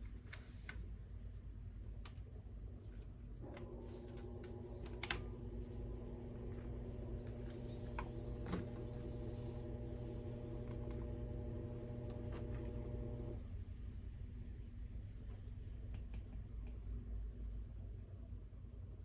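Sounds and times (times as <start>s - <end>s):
washing machine running: 3.4s - 13.5s.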